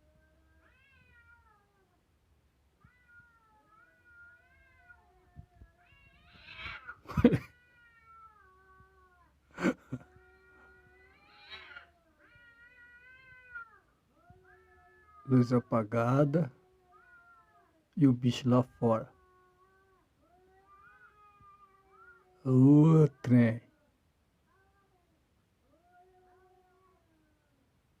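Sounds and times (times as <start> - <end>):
cat yowling: 2.8 - 9.4, 10.0 - 18.0, 18.6 - 23.9.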